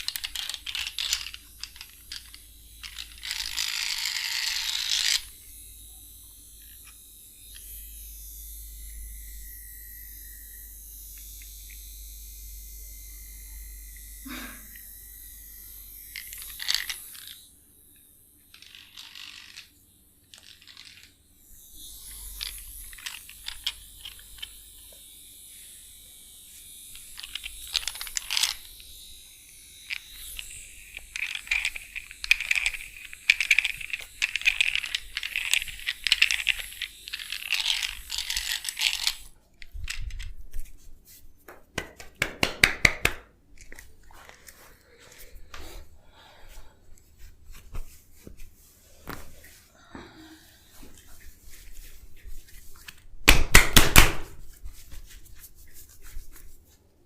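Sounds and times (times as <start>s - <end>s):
hands rubbing hair and skin: 40.2s - 49.8s, 50.6s - 57.0s.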